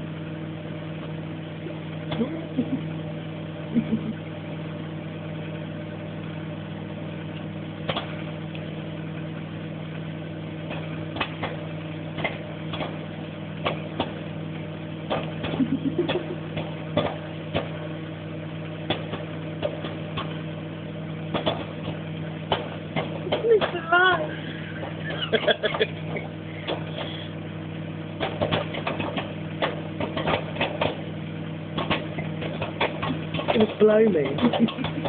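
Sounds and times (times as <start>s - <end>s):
microwave oven humming: 0.0s - 35.0s
popcorn popping: 7.2s - 35.0s.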